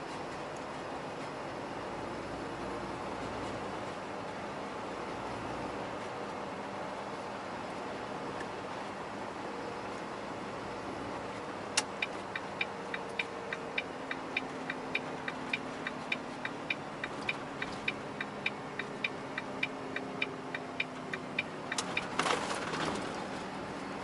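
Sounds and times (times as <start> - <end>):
truck cab running noise: 0.0 - 24.0
turn signal ticking: 11.7 - 22.2
rustle or clunk: 21.7 - 23.5.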